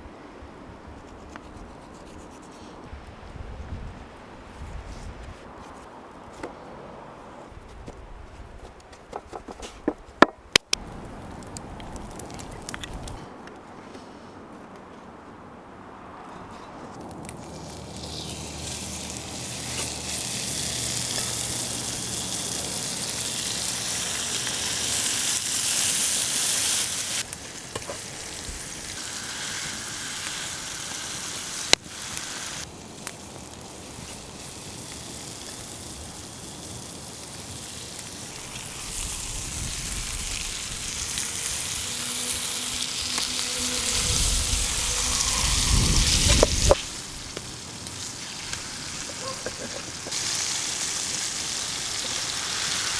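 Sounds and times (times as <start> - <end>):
food sizzling over campfire: 10.7 - 13.2, 16.6 - 52.9
low rumble: 39.2 - 47.3.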